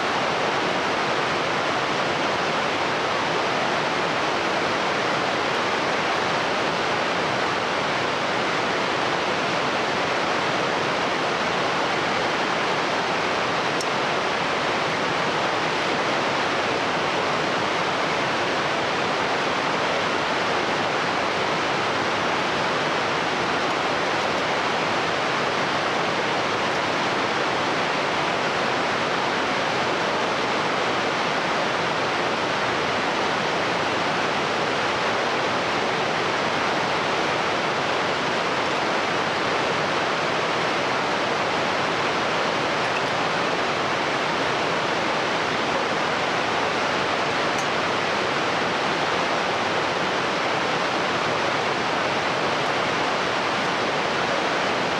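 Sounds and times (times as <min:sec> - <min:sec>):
stream rushing: 0:00.0 - 0:54.9.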